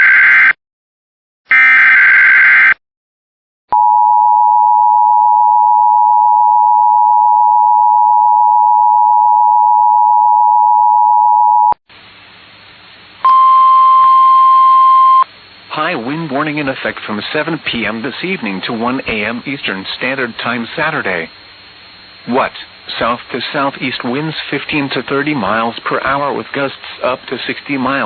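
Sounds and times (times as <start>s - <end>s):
steady beep: 13.2s - 15.3s
faint hiss: 15.3s - 28.0s.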